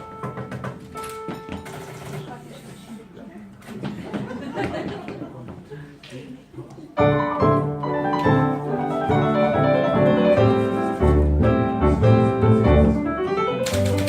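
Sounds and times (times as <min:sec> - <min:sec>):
keyboard music: 0:07.0 - 0:14.0.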